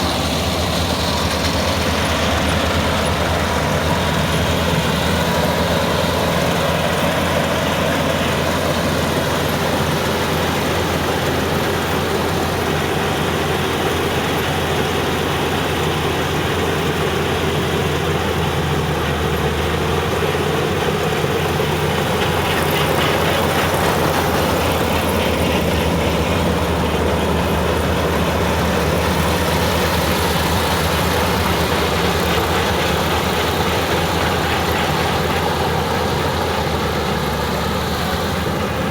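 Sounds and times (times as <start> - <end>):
farm machine engine humming: 0.0 - 38.9.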